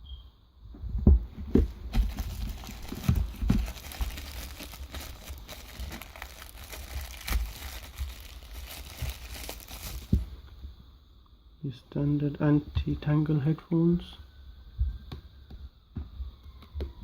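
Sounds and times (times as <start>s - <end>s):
handling knocks and thumps: 0.8s - 10.4s
packaging crinkling and rustling: 1.4s - 10.4s.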